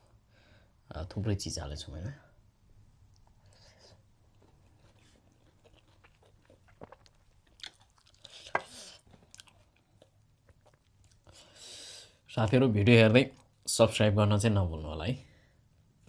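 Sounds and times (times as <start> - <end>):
person chewing: 3.2 - 11.4.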